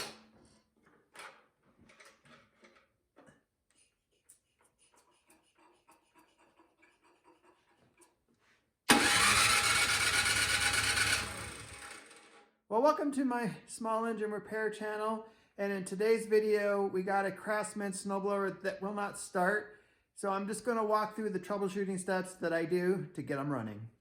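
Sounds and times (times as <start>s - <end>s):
small gasoline engine running: 8.9s - 12.4s.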